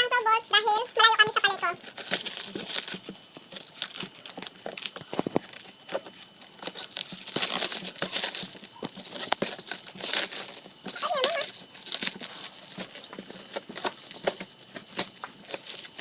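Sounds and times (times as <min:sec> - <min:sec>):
packaging crinkling and rustling: 0:00.0 - 0:16.0
packaging tearing: 0:00.8 - 0:16.0.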